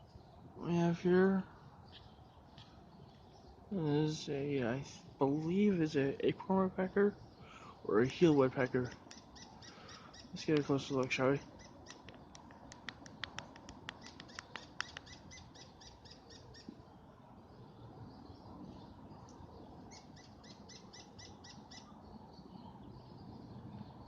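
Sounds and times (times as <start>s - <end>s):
woodpecker calling: 4.9s - 16.8s, 19.2s - 22.0s.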